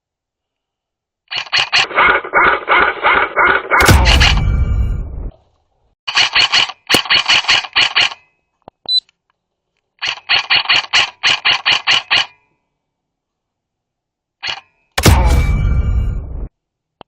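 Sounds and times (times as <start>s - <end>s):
airsoft rifle rapid shots: 1.3s - 4.4s, 6.1s - 8.2s, 10.0s - 12.4s.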